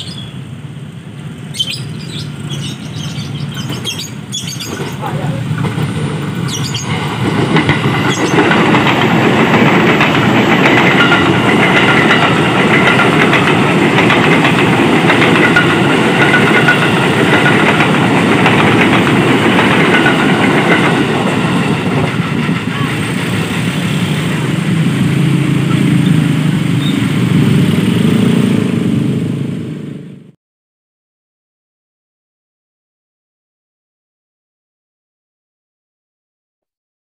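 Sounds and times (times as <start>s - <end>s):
train wheels clattering: 3.5s - 25.4s.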